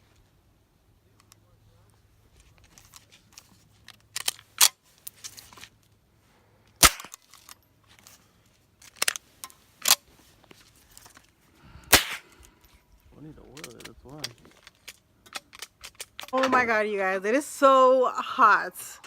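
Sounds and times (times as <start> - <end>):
gunshots: 6.8 - 7.2, 11.9 - 12.4.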